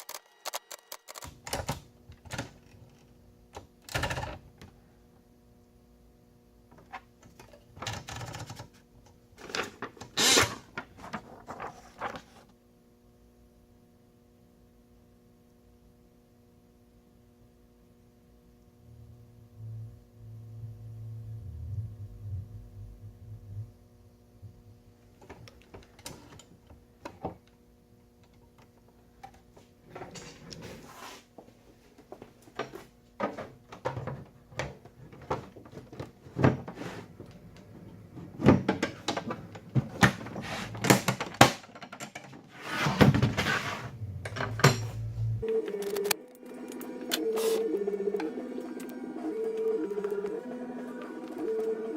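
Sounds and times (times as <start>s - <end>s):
low rumble: 18.8s - 24.8s, 43.9s - 45.4s.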